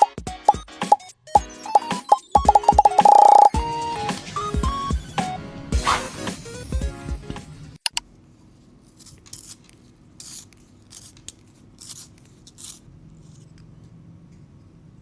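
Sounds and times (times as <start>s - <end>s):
objects scraping and rubbing: 5.6s - 6.4s, 8.2s - 14.8s.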